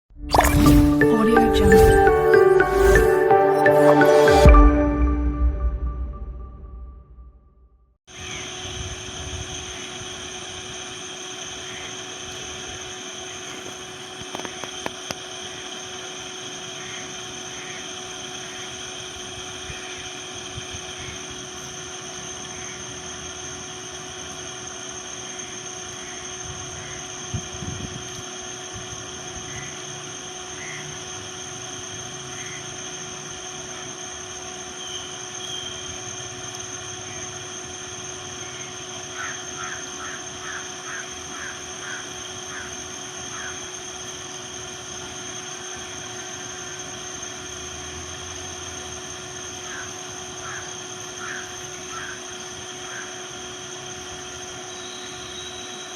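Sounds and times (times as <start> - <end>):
short high chirps: 0.2 - 6.9
continuous hum with tones: 8.1 - 55.9.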